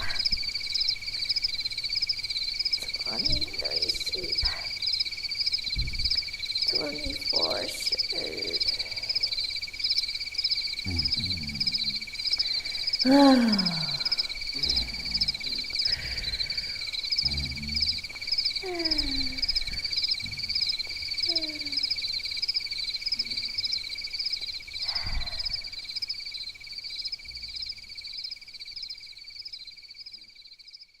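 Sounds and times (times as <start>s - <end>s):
crickets chirping: 0.0s - 31.0s.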